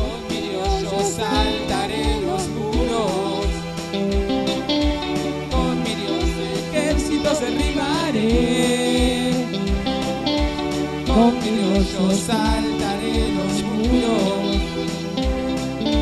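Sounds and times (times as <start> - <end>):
guitar: 0.0 - 16.0
low beat: 0.0 - 16.0
worship band playing: 0.0 - 16.0.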